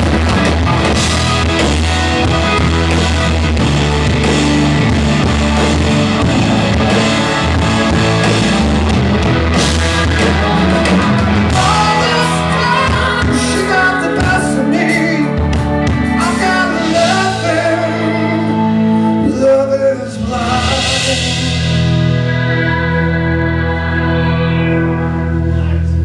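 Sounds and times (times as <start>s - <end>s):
bass: 0.0s - 26.0s
drums: 0.0s - 26.0s
electric guitar: 0.0s - 26.0s
person singing: 10.2s - 26.0s.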